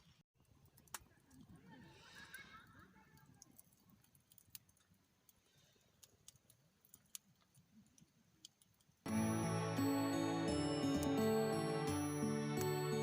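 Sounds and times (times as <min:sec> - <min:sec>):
small clicks and ticks: 0:00.0 - 0:01.6, 0:02.3 - 0:09.0
background music: 0:09.1 - 0:13.0.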